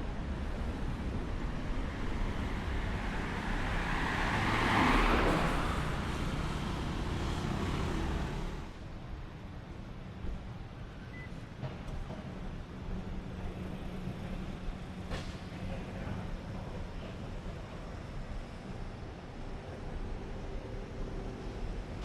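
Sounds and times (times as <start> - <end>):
low traffic rumble: 0.0 - 22.0
vehicle passing: 3.0 - 8.7.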